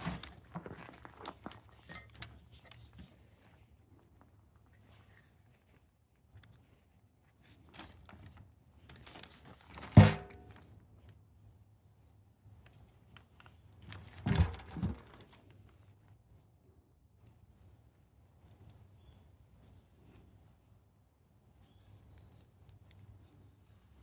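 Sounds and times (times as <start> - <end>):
handling clicks and rustles: 0.0 - 10.7, 12.5 - 15.8
sharp metallic clunk: 10.0 - 10.5.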